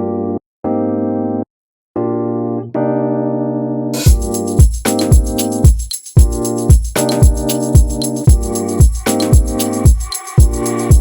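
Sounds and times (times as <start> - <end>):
held keyboard chords: 0.0 - 11.0
jingling tambourine percussion: 4.0 - 11.0
kick drum beat: 4.1 - 11.0.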